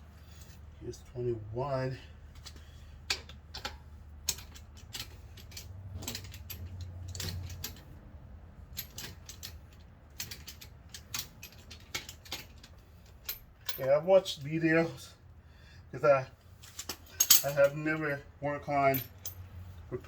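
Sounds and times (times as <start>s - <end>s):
metal tool clinks: 16.8s - 17.9s.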